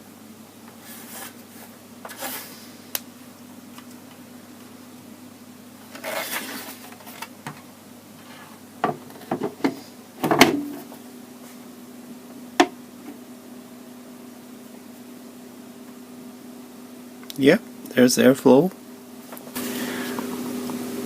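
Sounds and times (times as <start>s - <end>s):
constant low hum: 0.0s - 21.0s
cooling fan humming: 0.0s - 21.0s.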